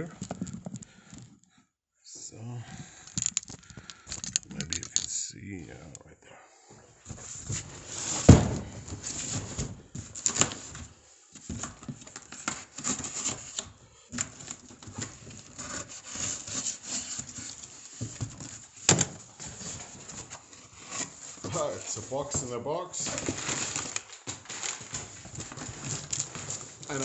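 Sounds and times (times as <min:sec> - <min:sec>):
cardboard rustling and scraping: 0:07.0 - 0:27.0.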